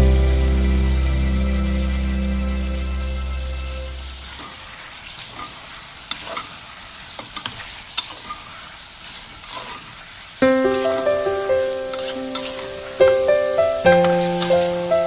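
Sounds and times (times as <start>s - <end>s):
background music: 0.0s - 4.2s, 10.4s - 15.0s
food sizzling in a pan: 3.9s - 15.0s.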